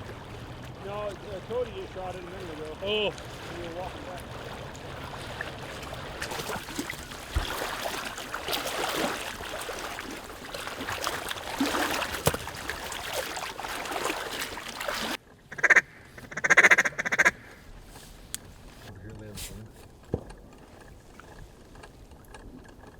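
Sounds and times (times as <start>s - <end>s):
ducks quacking: 15.5s - 17.7s.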